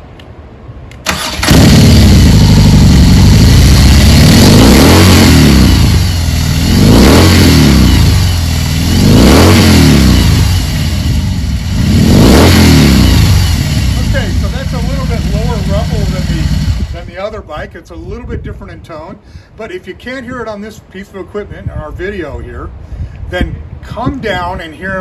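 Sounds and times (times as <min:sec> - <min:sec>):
motorcycle engine starting: 0:00.9 - 0:17.2
motorcycle engine revving: 0:01.1 - 0:17.1.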